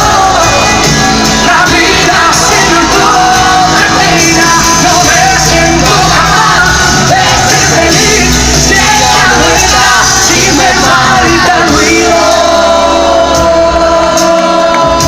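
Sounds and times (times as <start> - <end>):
live pop-rock band: 0.0 - 15.0
person singing: 0.0 - 15.0.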